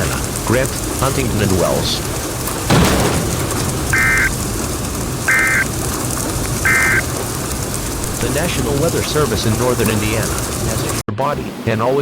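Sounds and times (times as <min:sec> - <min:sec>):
steady background hiss: 0:00.0 - 0:12.0
buzzy two-tone data bursts: 0:03.9 - 0:04.3, 0:05.3 - 0:05.6, 0:06.6 - 0:07.0.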